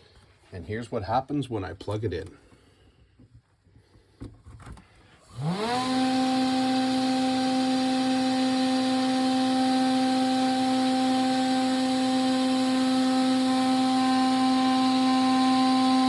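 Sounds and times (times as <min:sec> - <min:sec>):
spindle motor high-pitched whine: 0:05.3 - 0:16.0.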